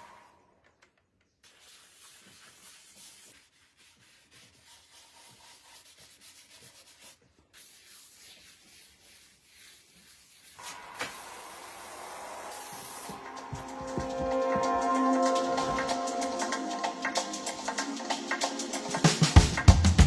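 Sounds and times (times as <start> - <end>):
sandpaper rubbing on wood: 1.4 - 14.8.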